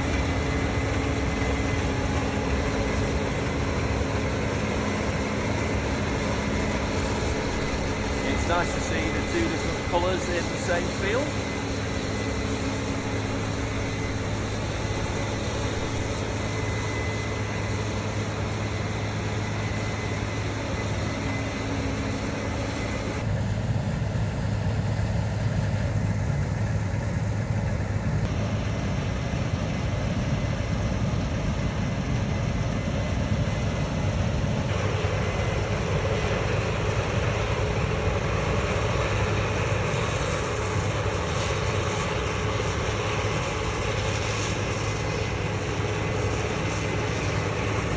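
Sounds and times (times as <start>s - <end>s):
whirr of threshing machinery: 0.0s - 23.3s, 34.3s - 47.9s
diesel engine drone: 0.0s - 47.9s.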